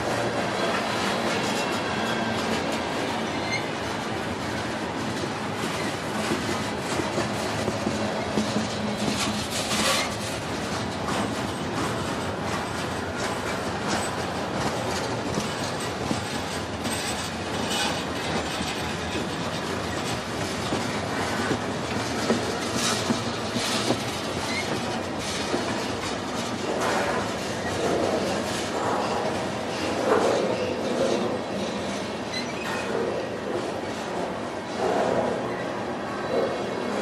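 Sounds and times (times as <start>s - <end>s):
train wheels clicking over rail joints: 0.0s - 35.5s
train rumble: 0.0s - 37.0s
wheel squeal: 1.4s - 3.8s, 22.8s - 25.4s, 31.9s - 32.9s.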